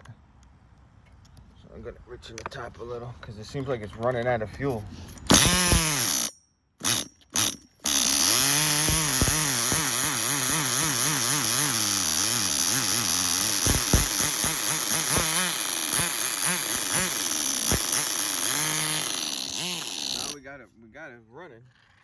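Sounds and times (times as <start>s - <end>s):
small engine sputtering and idling: 5.1s - 20.4s.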